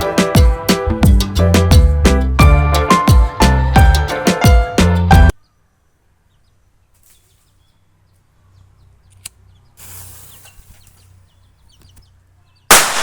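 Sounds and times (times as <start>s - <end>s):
birds chirping: 5.3s - 12.8s
firecracker bang: 12.7s - 13.0s.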